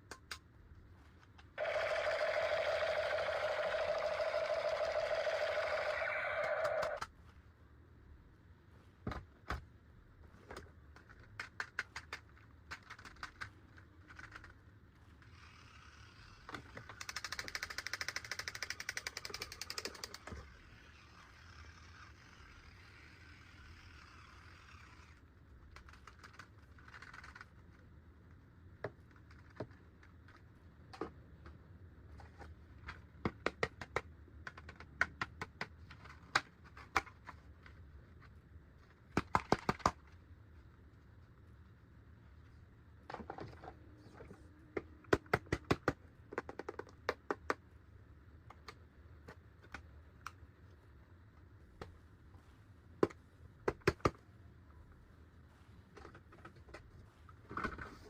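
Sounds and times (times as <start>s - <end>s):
plastic toy parts clicking: 1.2s - 7.1s, 10.5s - 27.8s, 32.2s - 40.2s.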